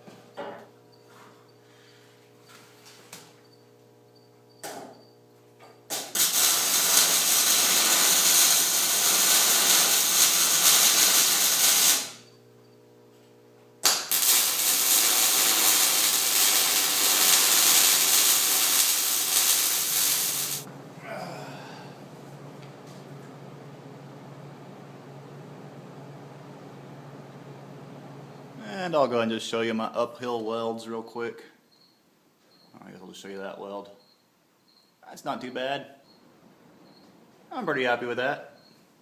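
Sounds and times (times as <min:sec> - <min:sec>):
steady hum: 0:00.2 - 0:29.7
welding arc hissing and crackling: 0:05.9 - 0:12.3, 0:13.8 - 0:20.7.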